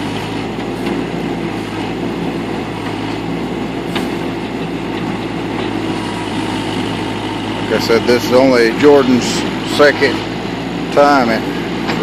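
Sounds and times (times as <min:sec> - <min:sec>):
backhoe engine running under load: 0:00.0 - 0:12.0.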